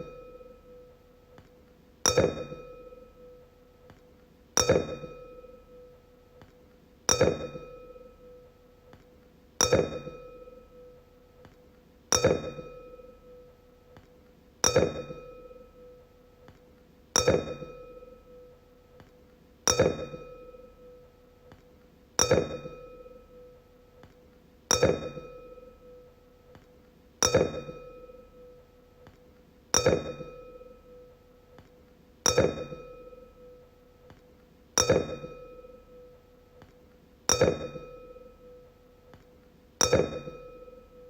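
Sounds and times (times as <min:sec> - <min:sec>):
wine glass struck and ringing: 0:02.1 - 0:03.4, 0:04.6 - 0:05.9, 0:07.1 - 0:08.4, 0:09.6 - 0:10.9, 0:12.1 - 0:13.5, 0:14.6 - 0:16.0, 0:17.2 - 0:18.5, 0:19.7 - 0:21.0, 0:22.2 - 0:23.6, 0:24.7 - 0:26.0, 0:27.2 - 0:28.6, 0:29.8 - 0:31.1, 0:32.3 - 0:33.6, 0:34.8 - 0:36.2, 0:37.3 - 0:38.7, 0:39.8 - 0:41.0.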